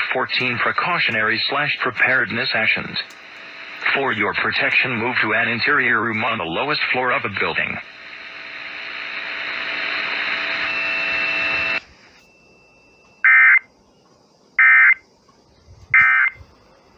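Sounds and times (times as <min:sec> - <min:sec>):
radio static hiss: 0:00.0 - 0:12.2, 0:14.6 - 0:16.9
emergency alert data tones: 0:10.8 - 0:13.7, 0:14.6 - 0:15.0, 0:16.0 - 0:16.5.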